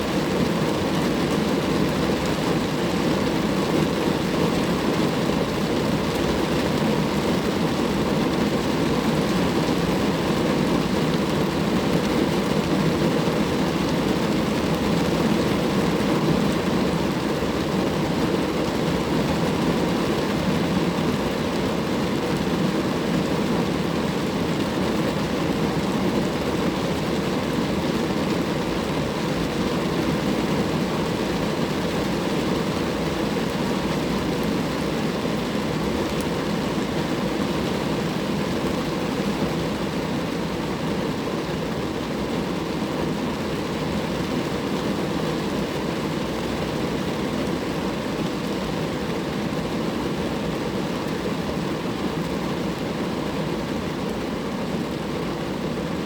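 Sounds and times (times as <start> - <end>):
rain falling on a car: 0.1 - 56.0.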